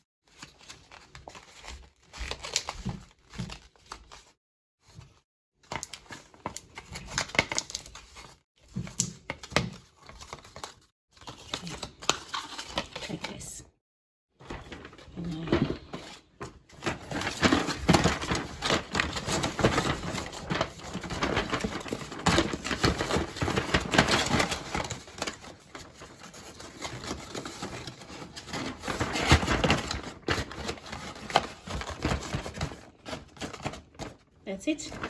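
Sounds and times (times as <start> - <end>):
cardboard rustling and scraping: 14.4 - 34.2.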